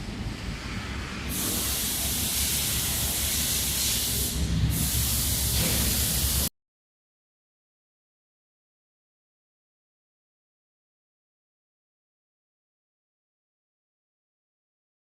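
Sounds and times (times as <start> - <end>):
spraying hiss: 1.3 - 6.5.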